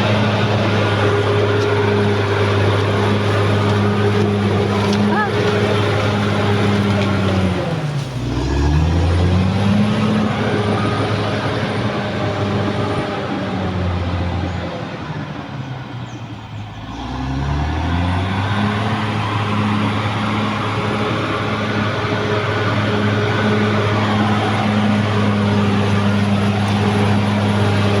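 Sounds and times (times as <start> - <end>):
bulldozer diesel engine under load: 0.0 - 28.0.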